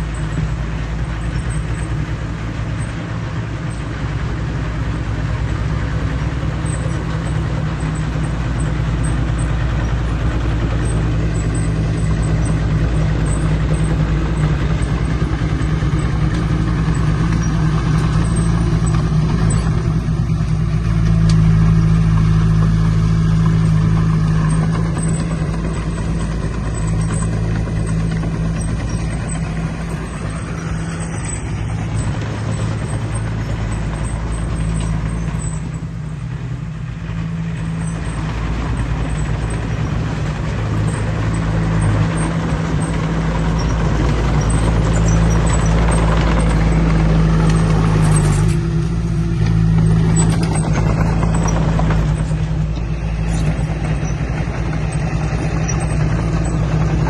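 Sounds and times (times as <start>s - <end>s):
heavy machine diesel engine running: 0.0s - 57.0s.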